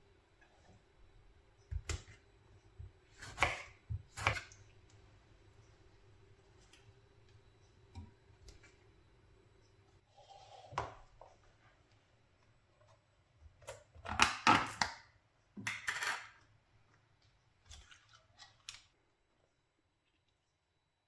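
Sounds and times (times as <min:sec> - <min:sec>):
kitchenware clinks and clatters: 0:15.7 - 0:16.4.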